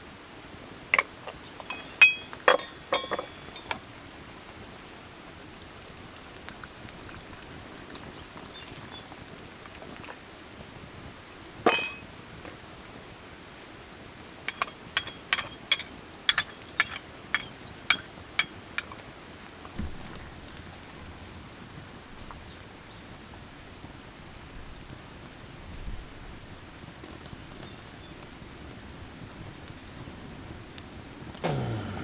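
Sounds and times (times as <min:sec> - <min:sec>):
cookware clinking: 0:01.0 - 0:03.9, 0:11.7 - 0:12.1, 0:14.5 - 0:19.0
dull thump: 0:19.8 - 0:20.6
rain hissing: 0:31.4 - 0:32.0.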